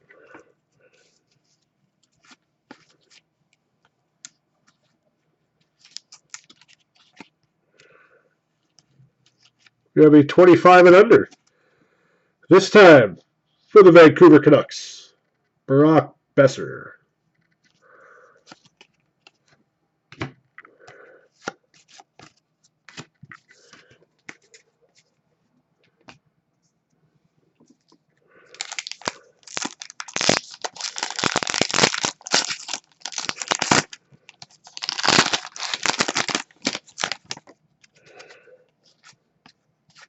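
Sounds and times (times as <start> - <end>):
cards clicking and rustling: 5.7 - 7.4, 18.4 - 19.6, 21.4 - 25.1, 28.6 - 40.0
foil wrapper tearing and crinkling: 28.5 - 37.5.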